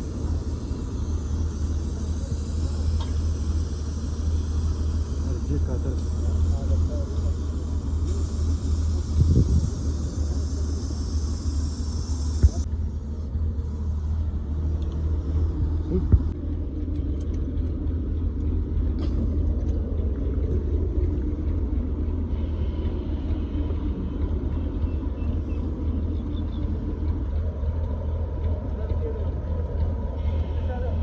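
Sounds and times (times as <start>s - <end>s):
low mechanical rumble: 0.0s - 31.0s.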